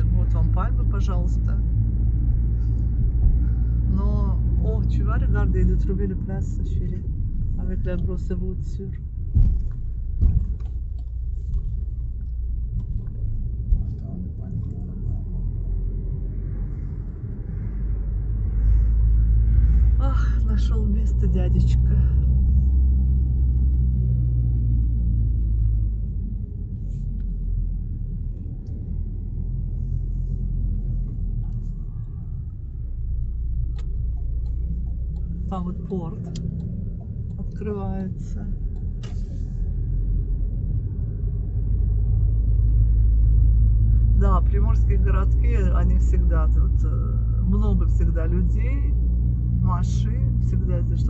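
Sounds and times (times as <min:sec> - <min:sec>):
car driving rumble from inside: 0:00.0 - 0:51.0
road noise: 0:00.0 - 0:51.0.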